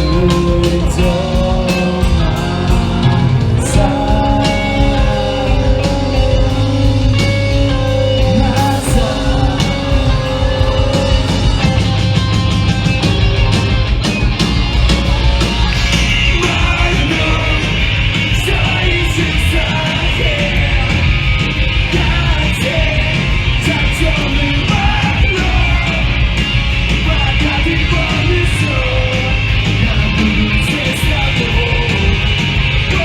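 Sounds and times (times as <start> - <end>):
live punk band playing: 0.0 - 33.0
yelled and sung vocals: 0.0 - 33.0.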